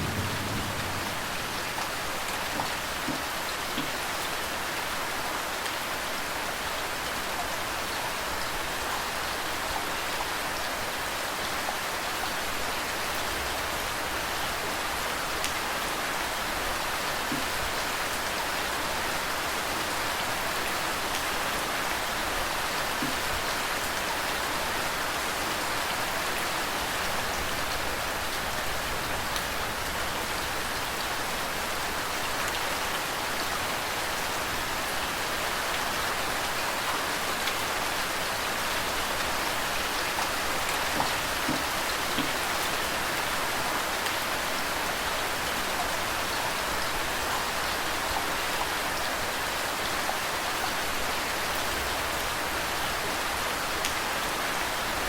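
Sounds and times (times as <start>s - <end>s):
low thunder rumble: 0.0s - 2.2s
steady rain falling: 0.0s - 55.0s.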